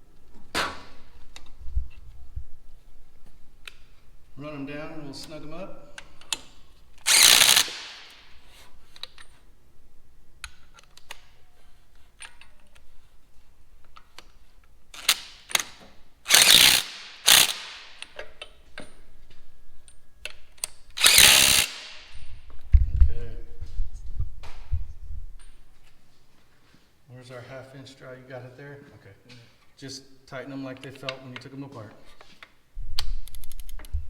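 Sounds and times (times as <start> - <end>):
ratchet wrench clicking: 7.1 - 8.2, 15.0 - 15.7, 16.3 - 18.1, 21.0 - 22.2.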